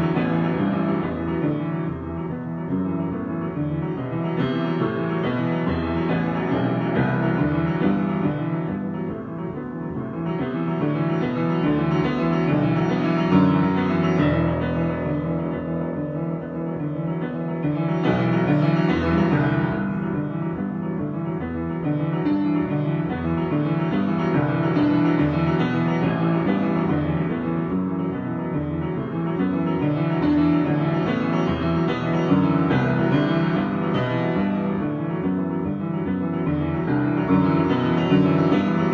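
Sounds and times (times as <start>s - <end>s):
piano improvisation: 0.0s - 38.9s.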